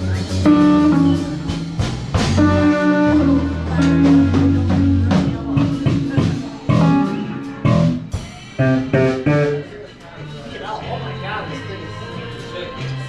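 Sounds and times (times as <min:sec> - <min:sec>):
amplified guitar chords: 0:00.0 - 0:09.8
bass notes: 0:00.0 - 0:10.0
drum hits: 0:00.1 - 0:09.8.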